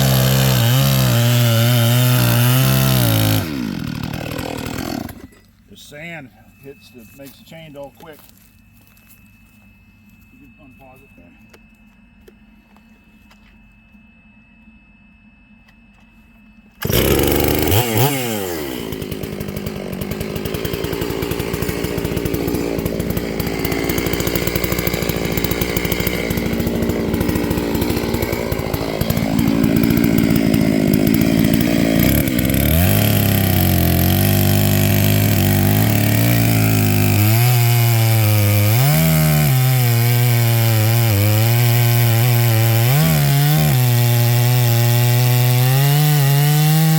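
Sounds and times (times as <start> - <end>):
chainsaw cutting wood: 0.0 - 5.5, 16.8 - 46.9.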